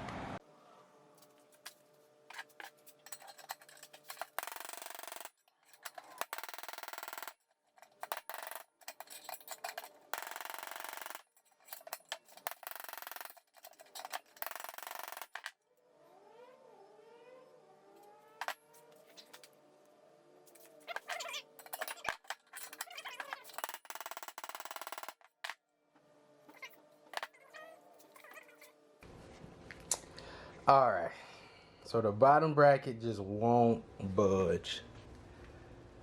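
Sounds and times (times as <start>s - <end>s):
cat-like pitched calls: 26.5s - 28.7s.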